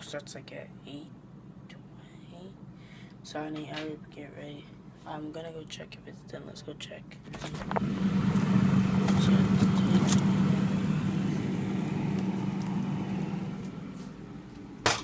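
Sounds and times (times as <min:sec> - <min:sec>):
low motor hum: 0:07.3 - 0:15.0.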